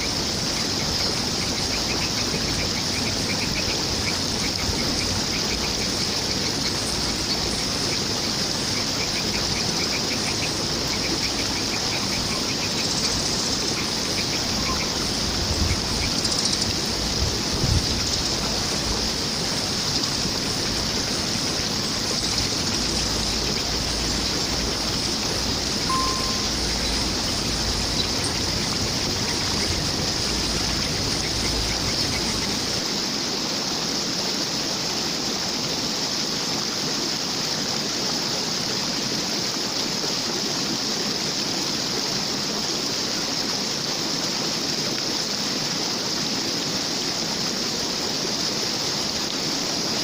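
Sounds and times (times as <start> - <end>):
flowing water: 0.0 - 50.0
bird calling: 8.7 - 16.7, 25.7 - 32.7.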